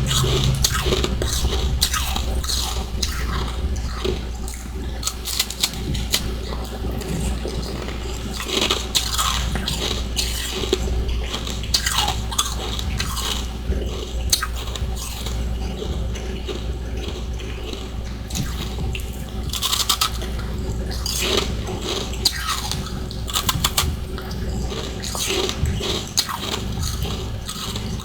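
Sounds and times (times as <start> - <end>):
low hum: 0.0 - 5.1
chewing ice crunches: 0.0 - 28.0.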